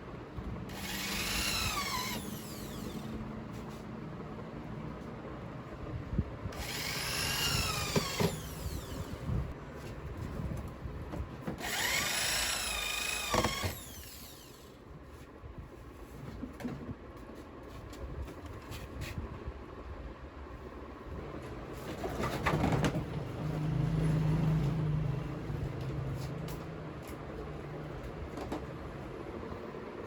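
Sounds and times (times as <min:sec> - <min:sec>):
workshop noise: 0:00.0 - 0:15.3, 0:21.2 - 0:29.8
power tool motor whining: 0:00.7 - 0:03.2, 0:06.6 - 0:09.5, 0:11.6 - 0:14.8.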